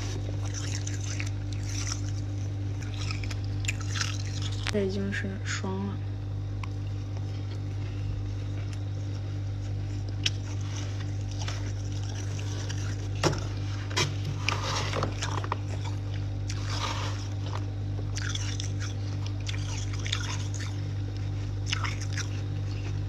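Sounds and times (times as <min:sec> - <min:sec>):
steady low hum: 0:00.0 - 0:23.0
scraping on frozen items: 0:09.7 - 0:20.8.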